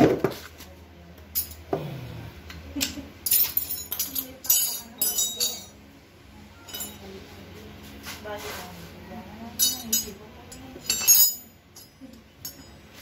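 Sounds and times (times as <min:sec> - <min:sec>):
metal parts clinking: 0:01.3 - 0:01.7, 0:02.8 - 0:05.8, 0:06.6 - 0:07.0, 0:09.6 - 0:13.0.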